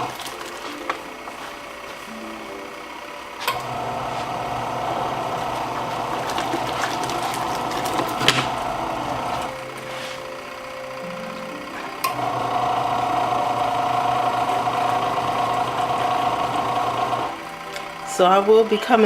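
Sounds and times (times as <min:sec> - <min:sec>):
washing machine motor hum: 0:00.0 - 0:19.0
washing machine click: 0:05.2 - 0:09.6.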